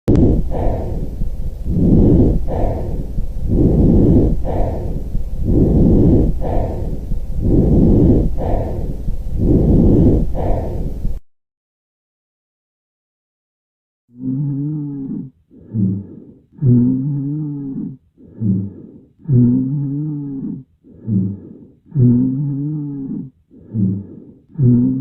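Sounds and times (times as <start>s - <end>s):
breathing in chest: 0.2s - 11.2s, 15.0s - 25.0s.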